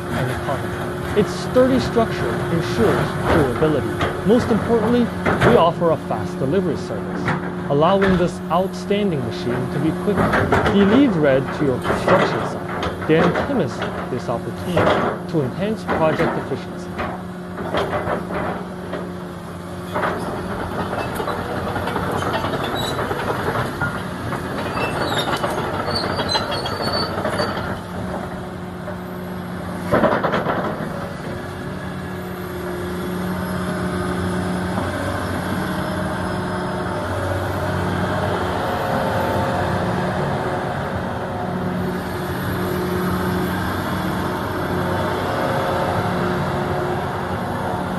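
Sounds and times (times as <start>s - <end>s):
excavator engine hum: 0.0s - 47.9s
metallic clanking and squeaking: 7.1s - 18.7s, 19.8s - 28.3s.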